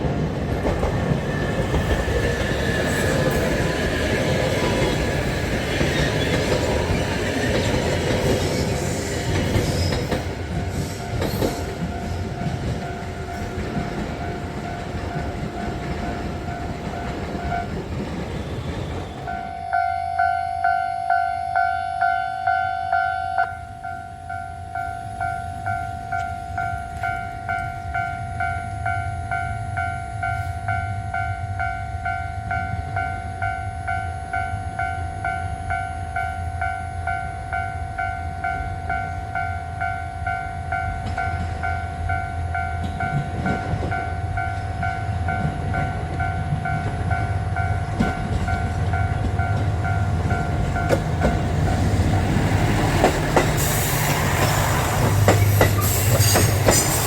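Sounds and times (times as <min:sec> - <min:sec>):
train rumble: 0:00.0 - 0:19.6, 0:22.4 - 0:57.0
level crossing bell ringing: 0:19.3 - 0:41.0.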